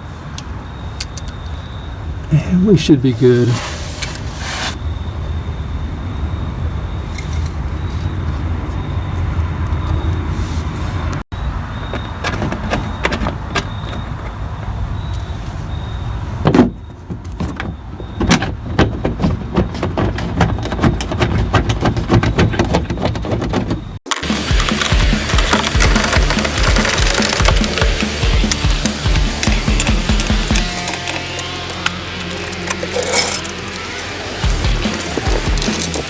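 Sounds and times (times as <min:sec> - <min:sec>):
sharp clicks and knocks: 0:16.5 - 0:36.0
car engine running: 0:24.1 - 0:36.0.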